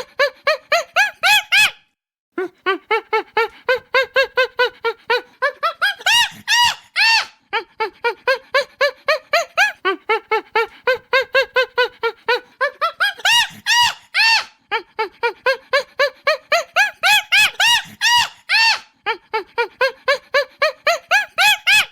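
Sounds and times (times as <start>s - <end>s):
chimpanzee screaming: 5.9s - 7.3s, 13.0s - 14.5s, 16.8s - 18.9s.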